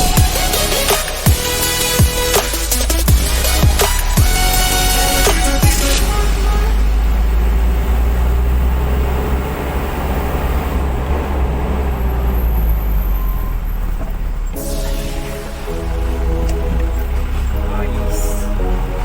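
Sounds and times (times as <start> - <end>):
heavy diesel machinery rumbling: 0.0 - 19.0.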